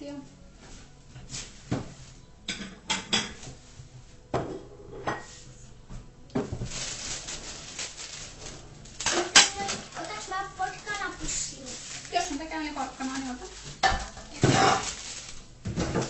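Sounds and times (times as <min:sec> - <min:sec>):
items knocking and clattering: 0:01.7 - 0:03.6, 0:04.3 - 0:05.3, 0:06.0 - 0:16.0
rustling: 0:06.4 - 0:16.0.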